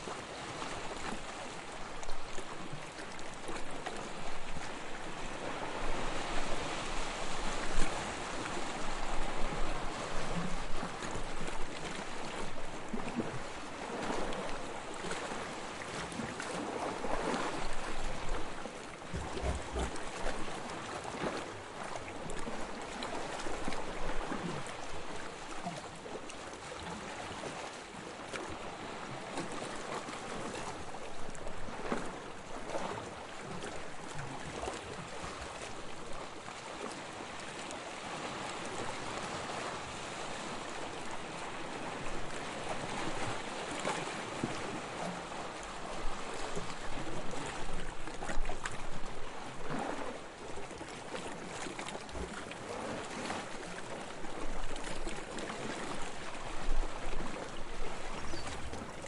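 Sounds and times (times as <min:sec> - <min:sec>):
sea water lapping and splashing: 0:00.0 - 0:59.0
wind: 0:00.0 - 0:59.0.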